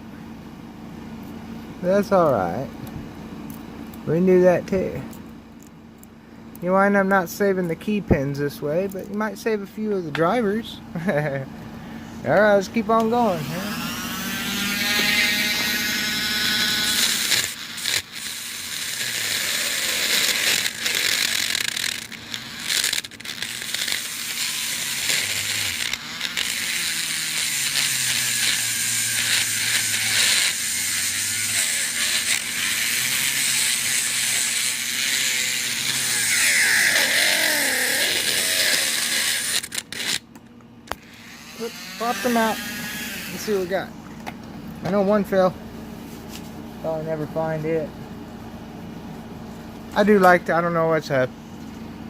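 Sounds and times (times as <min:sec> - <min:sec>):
power drill drilling into metal: 0:13.6 - 0:40.2.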